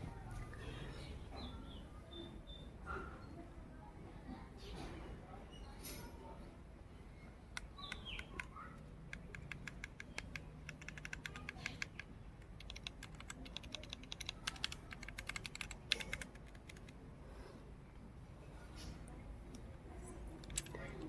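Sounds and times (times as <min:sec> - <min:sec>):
mechanical keyboard typing: 0:07.6 - 0:17.0, 0:20.3 - 0:21.0.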